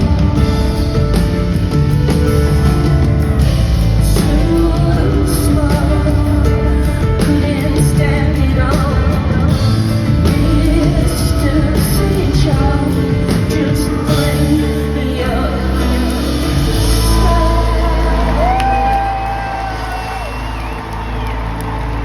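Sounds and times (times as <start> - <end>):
live pop-rock band: 0.0 - 22.0
woman singing: 3.4 - 19.9.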